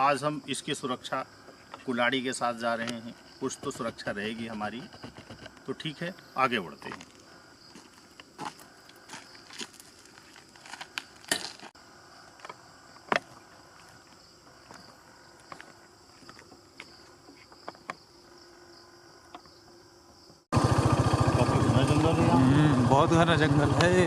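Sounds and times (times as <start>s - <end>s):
night insects chirring: 0.0s - 24.0s
footsteps crunching on dry leaves: 6.9s - 11.8s.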